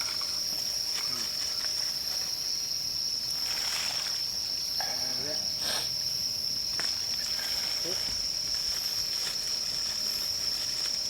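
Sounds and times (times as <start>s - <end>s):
high-pitched insect trill: 0.0s - 11.0s
fire crackling: 5.8s - 11.0s.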